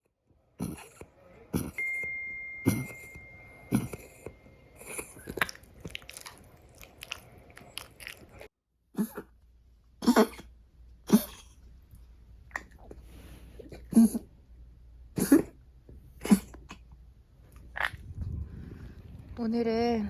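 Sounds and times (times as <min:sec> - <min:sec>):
dog coughing and hacking: 0:00.5 - 0:06.0, 0:08.9 - 0:09.4, 0:10.0 - 0:11.6, 0:13.6 - 0:14.4, 0:15.1 - 0:17.0.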